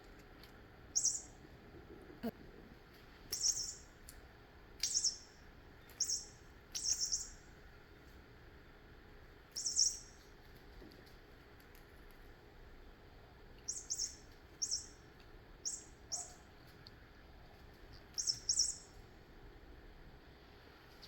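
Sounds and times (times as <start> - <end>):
high-pitched chirping: 1.0 - 1.3, 3.4 - 3.9, 4.8 - 5.3, 6.0 - 7.4, 9.6 - 10.2, 13.7 - 15.0, 15.6 - 16.4, 18.2 - 19.0.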